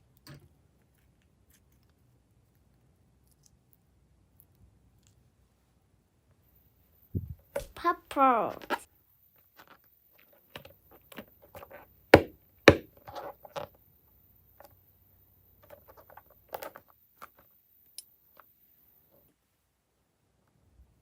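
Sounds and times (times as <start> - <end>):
sharp knocks: 12.2 - 12.8.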